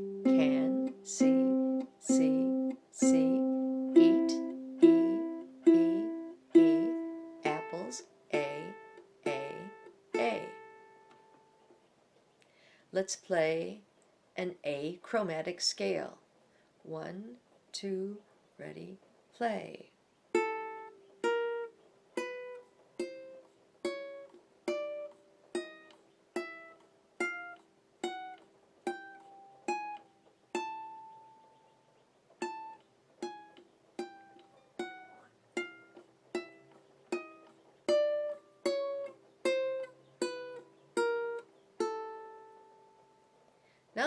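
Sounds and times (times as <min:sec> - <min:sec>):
ukulele plucking a scale: 0:00.0 - 0:11.4, 0:32.4 - 0:43.2.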